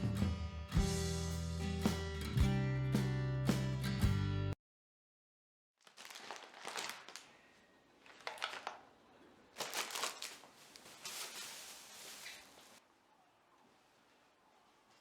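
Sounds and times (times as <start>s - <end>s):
rustling crinkling handling noise: 5.8s - 12.8s.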